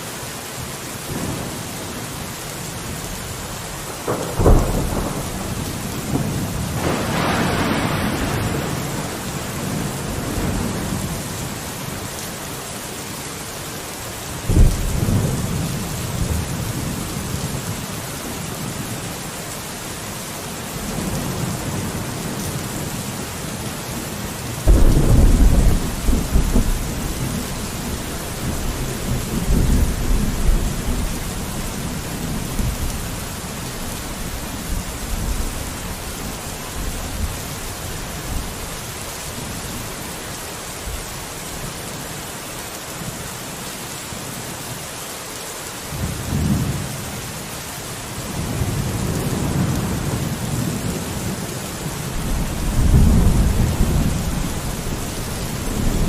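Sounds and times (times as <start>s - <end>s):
steady rain falling: 0.0s - 56.0s
rolls of thunder: 4.0s - 10.8s.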